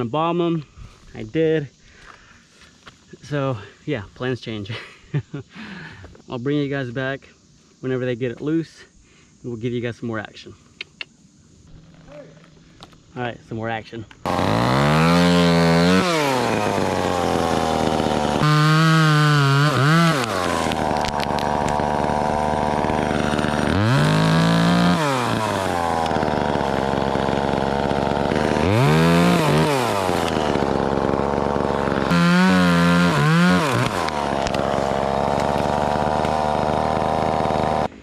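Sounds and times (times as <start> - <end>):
chainsaw revving and idling: 14.2 - 38.0.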